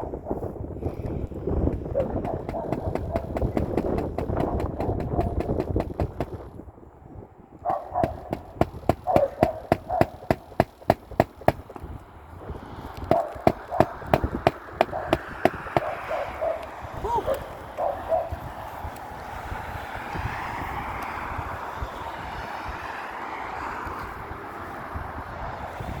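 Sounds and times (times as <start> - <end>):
hammer driving nails into shingles: 1.6 - 6.5, 7.7 - 11.9, 13.0 - 16.1.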